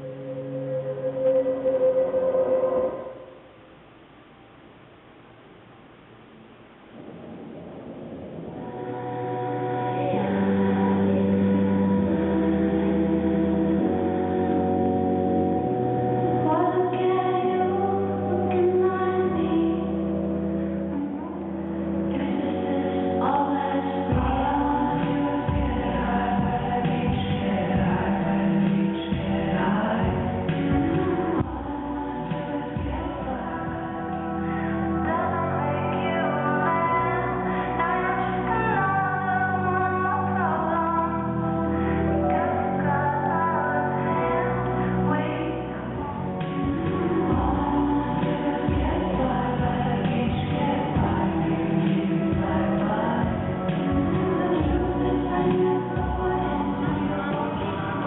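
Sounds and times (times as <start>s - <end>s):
held low music notes: 7.0s - 58.0s
choir-like singing: 8.6s - 20.4s, 21.0s - 58.0s.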